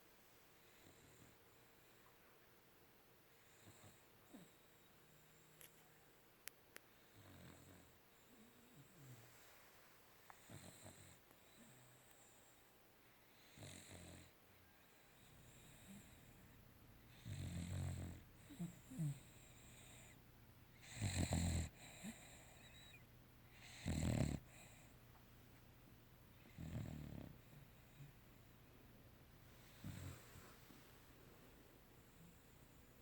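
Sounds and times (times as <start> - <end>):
animal snoring: 3.4 - 5.6, 7.0 - 9.3, 10.4 - 12.4, 13.4 - 14.3, 17.1 - 20.2, 20.8 - 23.0, 23.6 - 24.9, 26.5 - 28.1, 29.6 - 30.6.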